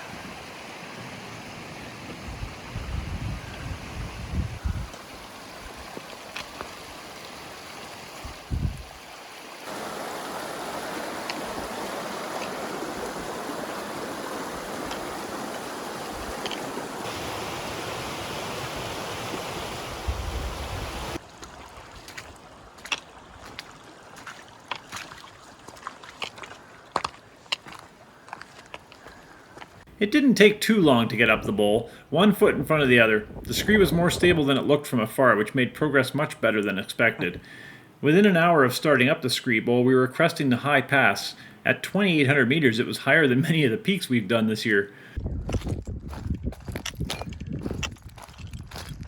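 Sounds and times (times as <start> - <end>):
mountain water rushing: 0.0 - 3.0, 4.7 - 29.2
wind on microphone: 2.0 - 5.0, 8.2 - 9.0, 12.9 - 21.2, 32.4 - 34.5, 45.2 - 49.0.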